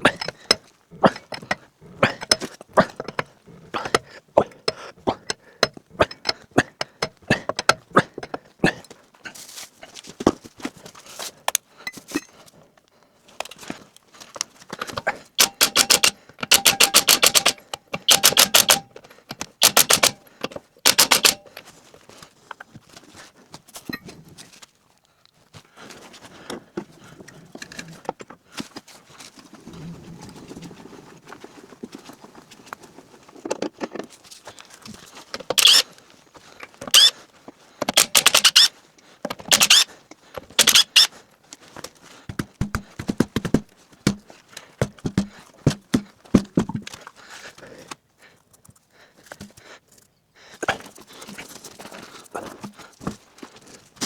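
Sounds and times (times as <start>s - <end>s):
ratchet tool clicking: 15.4s - 20.2s, 20.9s - 21.4s, 35.4s - 35.8s, 36.9s - 37.1s, 37.8s - 38.7s, 39.4s - 39.9s, 40.6s - 41.1s.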